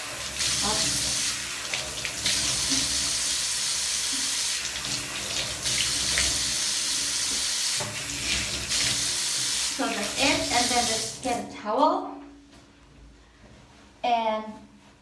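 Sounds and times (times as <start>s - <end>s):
tap water running into sink: 0.0s - 11.4s.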